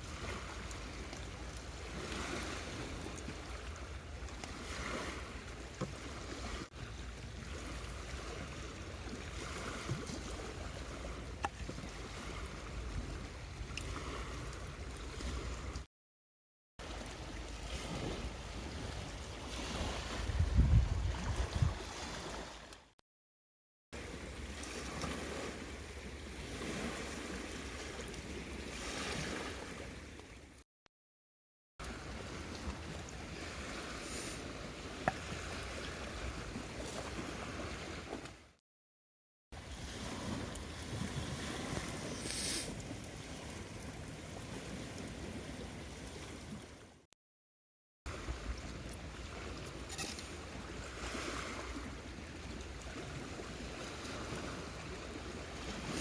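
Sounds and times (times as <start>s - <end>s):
surf washing on shore: 0.0s - 15.8s, 16.8s - 22.7s, 24.0s - 30.4s, 31.9s - 38.4s, 39.6s - 46.8s, 48.1s - 56.0s
rushing water: 0.0s - 15.9s, 16.8s - 22.9s, 24.0s - 30.6s, 31.8s - 38.5s, 39.6s - 47.0s, 48.1s - 56.0s
wind: 0.0s - 15.9s, 16.8s - 23.0s, 23.9s - 30.7s, 31.8s - 38.6s, 39.5s - 47.1s, 48.1s - 56.0s
short hiss: 42.1s - 42.8s.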